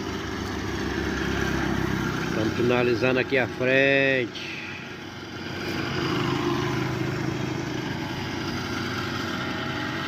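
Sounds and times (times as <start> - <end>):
engine running steadily: 0.0 - 10.0.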